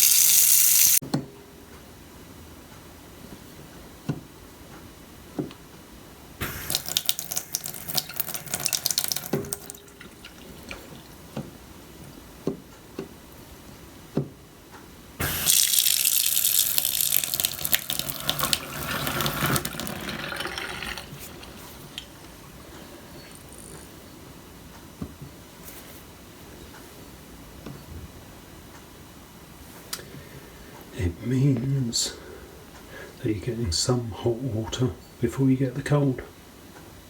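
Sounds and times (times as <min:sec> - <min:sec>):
tap running into a sink: 0:06.4 - 0:11.5.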